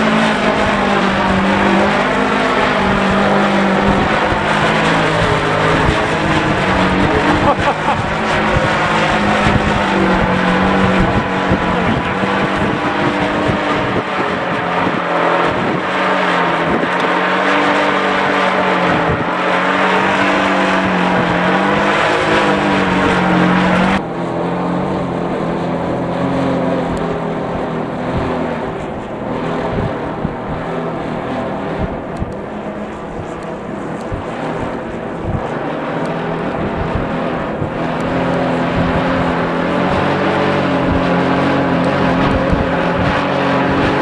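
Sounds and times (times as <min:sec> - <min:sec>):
wind rushing: 0:00.0 - 0:15.8
kite buzzing: 0:00.0 - 0:44.0.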